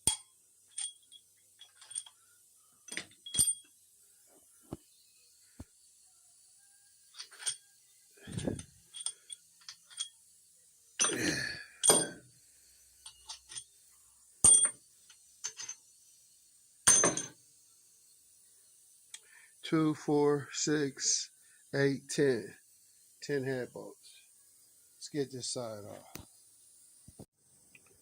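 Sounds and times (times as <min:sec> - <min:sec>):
metal bolts and tools clinking: 0:00.0 - 0:02.2, 0:02.8 - 0:03.8, 0:07.1 - 0:07.7, 0:08.3 - 0:10.2, 0:11.0 - 0:11.2, 0:11.8 - 0:12.3, 0:13.0 - 0:13.8, 0:14.4 - 0:15.8, 0:16.9 - 0:17.4.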